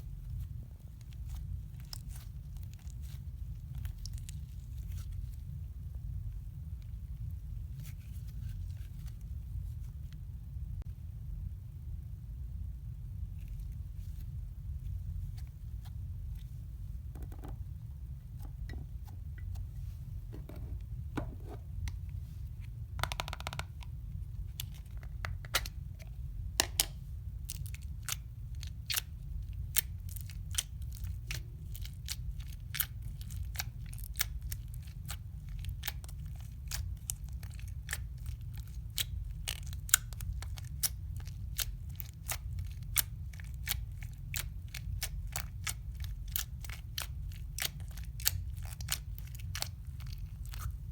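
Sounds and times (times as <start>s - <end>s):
low steady hum: 0.0s - 50.9s
slime clicking and crackling: 26.6s - 50.9s.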